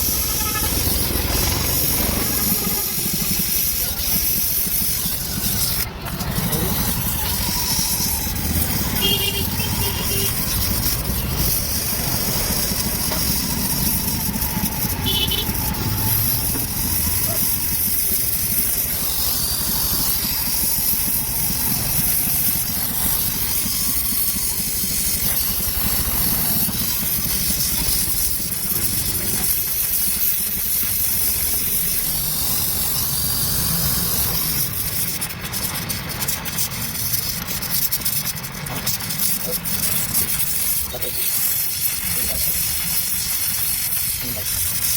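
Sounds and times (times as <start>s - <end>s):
welding torch flame hissing: 0.0s - 44.9s.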